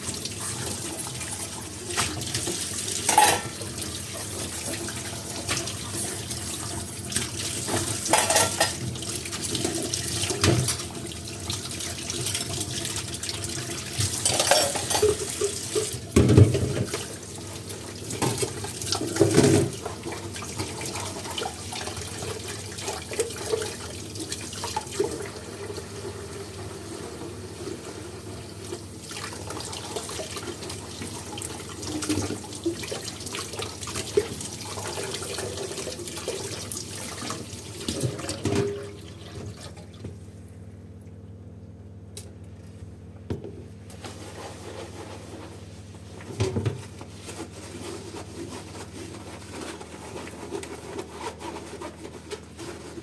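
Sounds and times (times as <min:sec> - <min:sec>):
dishes knocking and clinking: 0:03.1 - 0:03.6, 0:08.1 - 0:08.8, 0:14.2 - 0:15.2
tap running into a sink: 0:14.0 - 0:17.1.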